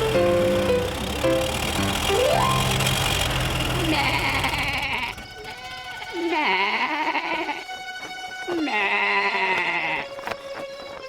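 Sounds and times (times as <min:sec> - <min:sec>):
lamb bleating: 0:04.0 - 0:07.7, 0:08.5 - 0:10.2.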